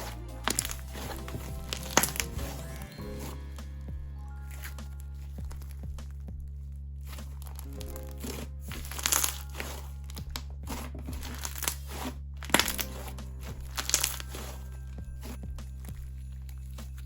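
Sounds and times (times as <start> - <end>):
slime crackling and popping: 0.0 - 2.6, 7.0 - 14.6.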